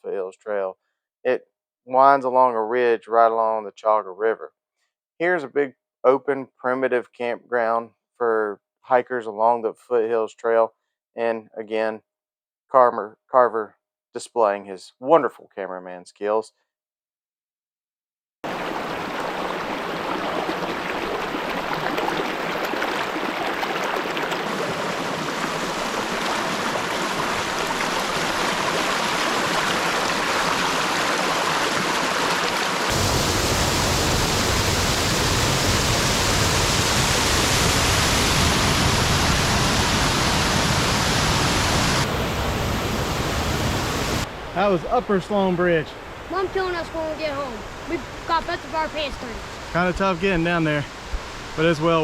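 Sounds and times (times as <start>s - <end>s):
small waterfall rushing: 18.4s - 52.0s.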